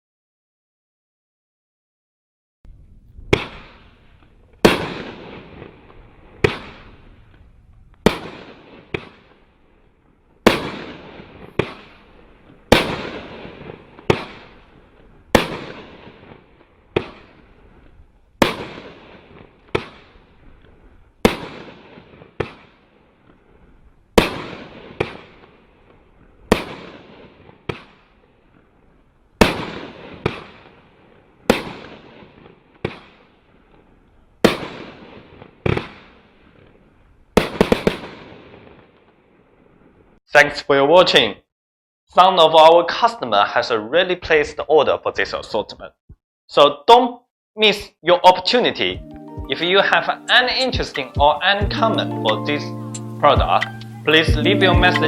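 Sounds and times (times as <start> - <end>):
firework bangs: 3.3 - 7.4, 8.0 - 9.4, 10.4 - 20.4, 21.2 - 22.7, 24.2 - 25.5, 26.5 - 28.0, 29.4 - 33.2, 34.4 - 36.7, 37.4 - 38.9.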